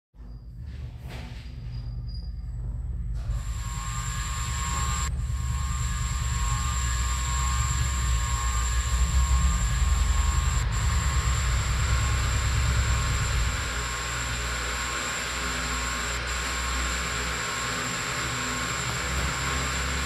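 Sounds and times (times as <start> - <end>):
steady high whine: 2.6 - 20.0
fan air buffeting microphone: 2.7 - 16.7.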